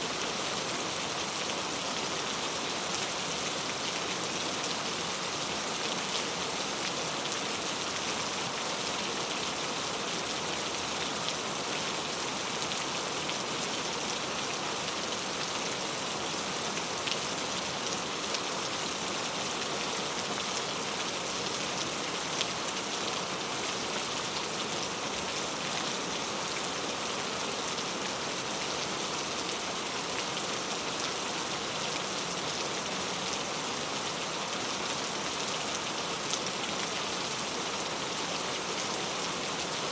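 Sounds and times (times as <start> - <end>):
rain falling onto a puddle: 0.1 - 39.9.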